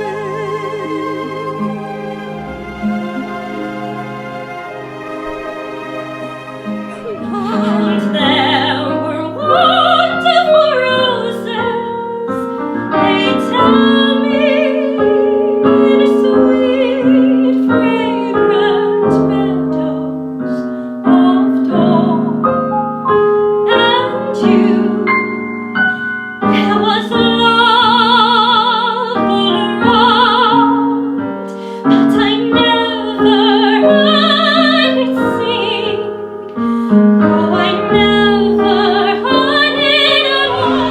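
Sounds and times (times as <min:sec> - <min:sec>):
woman singing operatically: 0:00.0 - 0:01.6, 0:07.0 - 0:20.2, 0:21.0 - 0:22.4, 0:23.7 - 0:25.1, 0:26.4 - 0:31.0, 0:31.8 - 0:36.2, 0:37.2 - 0:40.9
piano: 0:00.0 - 0:40.9.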